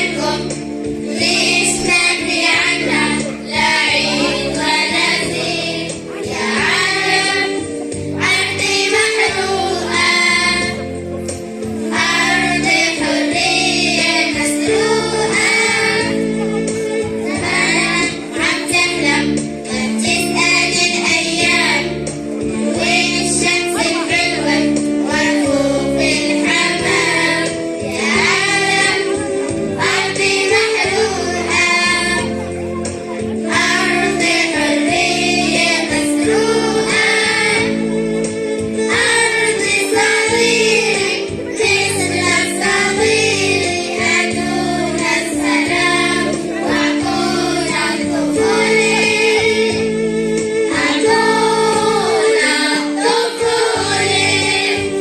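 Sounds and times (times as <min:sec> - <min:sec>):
children singing together: 0:00.0 - 0:11.0, 0:11.8 - 0:32.4, 0:33.3 - 0:38.0, 0:38.6 - 0:55.0
musical backing with steady beat: 0:00.0 - 0:55.0.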